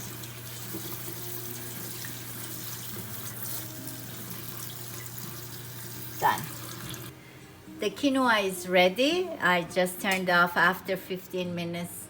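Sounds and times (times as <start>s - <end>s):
tap water running: 0.0s - 7.1s.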